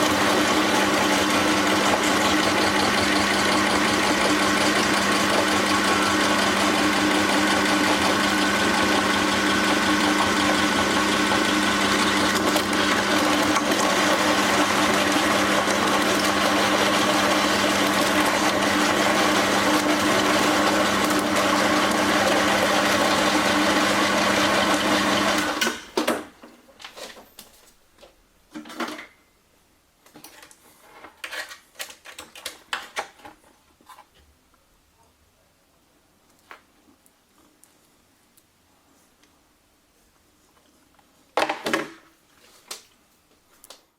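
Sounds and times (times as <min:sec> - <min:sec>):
electric meat grinder running: 0:00.0 - 0:25.8.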